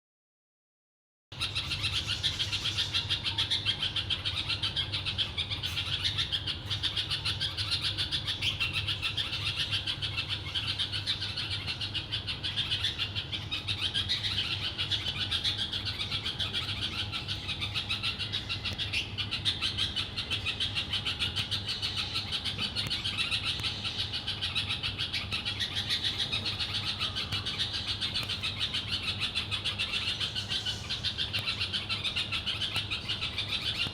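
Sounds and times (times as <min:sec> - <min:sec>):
small birds chirping: 0:01.3 - 0:33.9.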